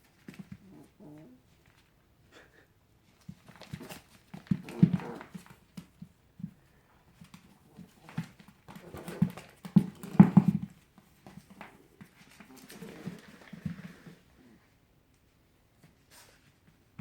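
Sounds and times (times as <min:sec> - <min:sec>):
puppy scuffling with ball: 0:03.1 - 0:14.4.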